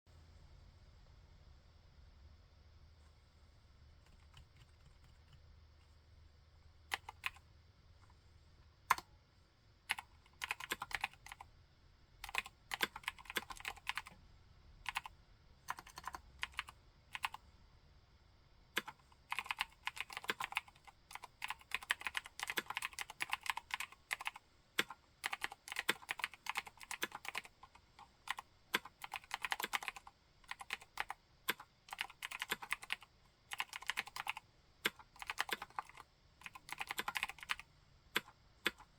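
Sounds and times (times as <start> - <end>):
typing on mechanical keyboard: 4.0 - 5.4, 6.9 - 7.4, 9.9 - 11.5, 12.2 - 14.2, 14.9 - 15.1, 15.7 - 17.4, 18.8 - 38.9.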